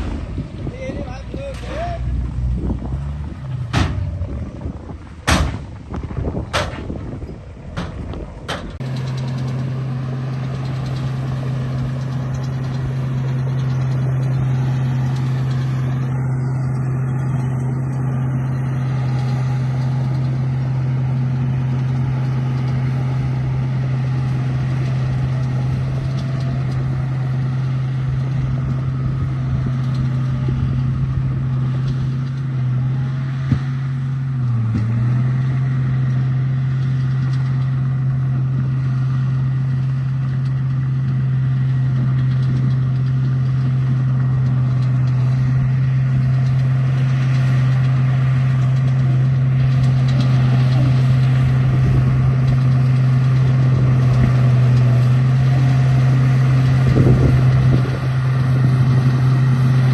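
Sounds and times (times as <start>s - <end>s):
sharp knocks: 3.7s - 4.2s, 5.2s - 5.8s
motor droning: 7.0s - 59.9s.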